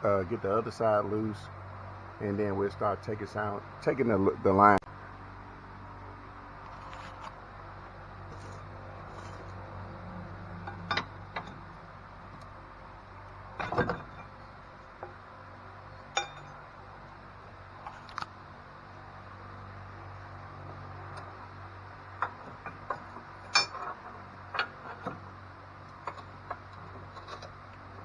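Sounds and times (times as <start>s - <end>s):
steady low hum: 0.0s - 28.0s
metal tools clinking on bolts: 10.6s - 11.8s, 13.6s - 14.4s, 16.1s - 16.6s, 22.2s - 25.2s.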